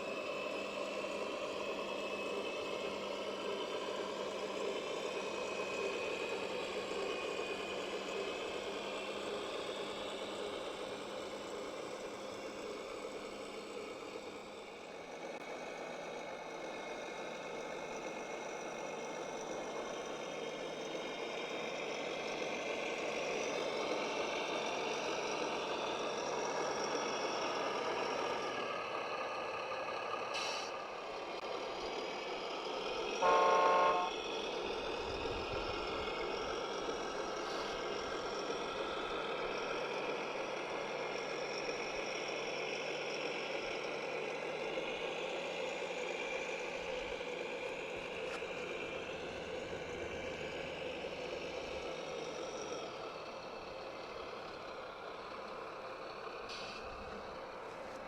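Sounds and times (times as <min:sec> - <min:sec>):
short horn toot: 0:33.2 - 0:34.2.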